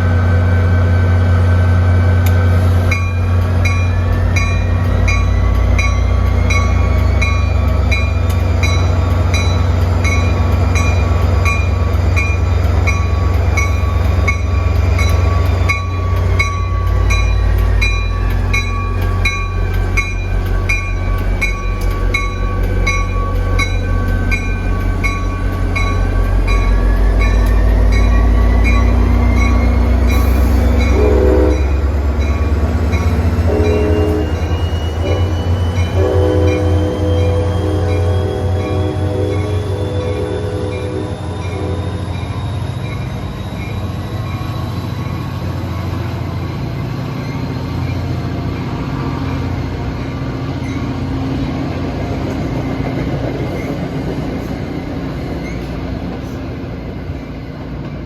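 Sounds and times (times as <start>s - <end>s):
diesel locomotive rumbling: 0.0s - 58.0s
train horn blasts: 30.7s - 31.9s, 33.4s - 41.9s.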